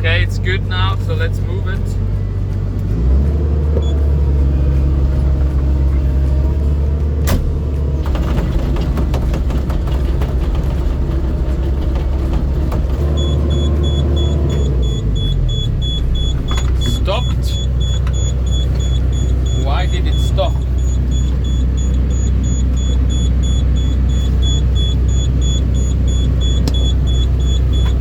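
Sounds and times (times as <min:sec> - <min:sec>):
excavator diesel engine running: 0:00.0 - 0:28.0
high warning beeper: 0:13.2 - 0:28.0.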